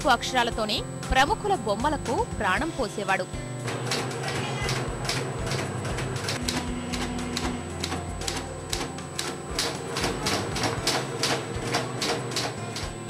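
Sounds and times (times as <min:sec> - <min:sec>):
typewriter keys clacking: 0:03.9 - 0:12.9.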